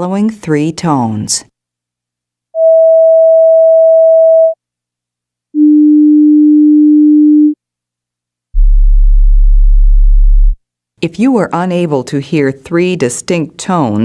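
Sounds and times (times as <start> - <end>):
pure test tones: 2.6 - 4.6.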